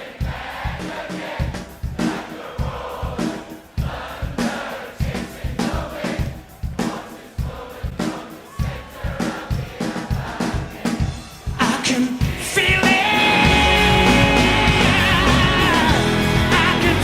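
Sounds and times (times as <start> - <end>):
live rock band playing: 10.4 - 17.0
person singing: 11.5 - 17.0
electric guitar: 12.2 - 17.0.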